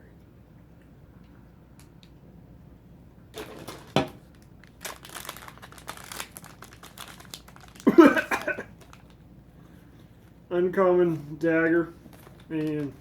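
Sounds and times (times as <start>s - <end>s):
foil pack crinkling and tearing: 3.3s - 9.2s, 11.7s - 13.0s.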